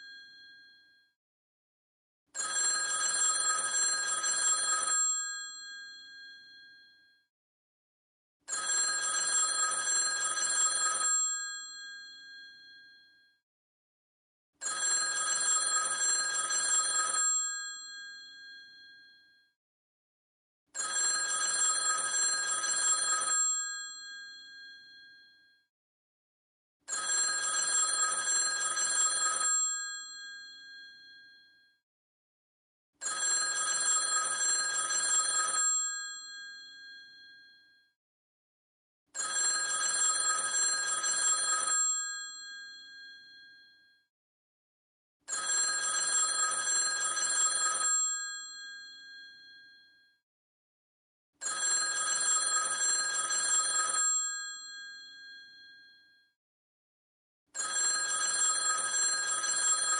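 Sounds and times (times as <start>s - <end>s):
telephone bell ringing: 0.0s - 1.1s, 2.4s - 7.1s, 8.5s - 13.3s, 14.6s - 19.4s, 20.8s - 25.5s, 26.9s - 31.7s, 33.0s - 37.8s, 39.2s - 43.9s, 45.3s - 50.2s, 51.4s - 56.1s, 57.6s - 59.9s.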